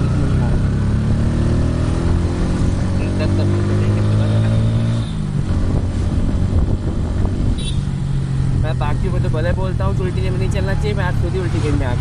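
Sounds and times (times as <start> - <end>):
motorcycle engine running: 0.0 - 4.5
road and wind noise: 0.0 - 12.0.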